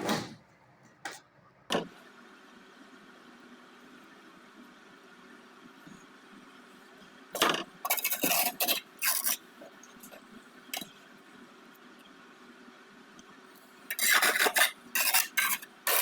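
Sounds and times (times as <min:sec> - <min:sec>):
tool scraping on brick: 0:07.4 - 0:09.4, 0:13.9 - 0:16.0.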